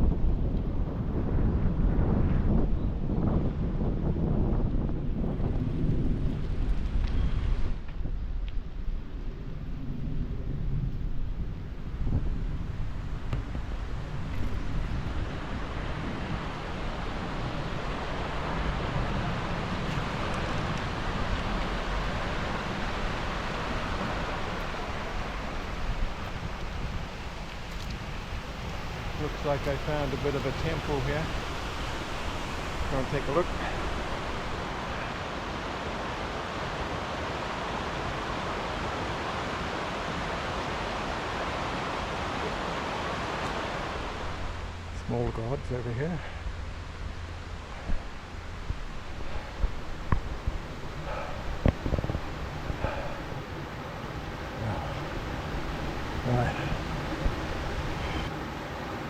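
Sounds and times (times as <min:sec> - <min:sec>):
wind buffeting microphone: 0:00.0 - 0:36.5, 0:43.5 - 0:58.3
stream water rushing: 0:12.6 - 0:59.0.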